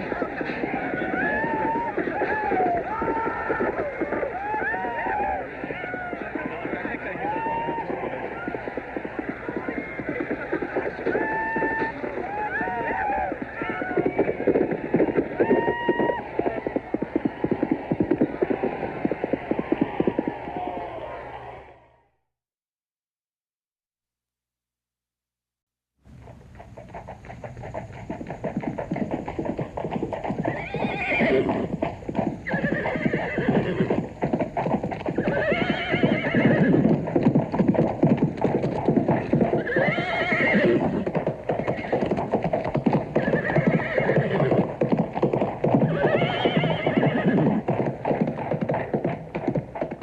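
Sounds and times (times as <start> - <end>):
hoofbeats galloping: 0.0 - 21.6, 26.0 - 50.0
horse neighing: 30.2 - 34.3, 35.0 - 37.1, 39.1 - 42.2, 42.8 - 44.7, 45.7 - 47.7.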